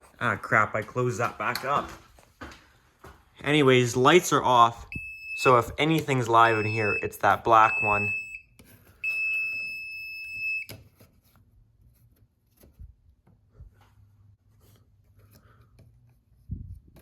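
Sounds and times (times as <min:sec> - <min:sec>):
voltage tester beeping: 0:04.9 - 0:10.7.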